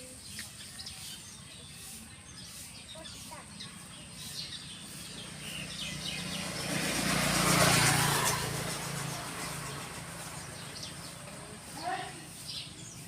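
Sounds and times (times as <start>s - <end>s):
small birds chirping: 0.0s - 13.0s
vehicle engine passing: 3.0s - 13.0s.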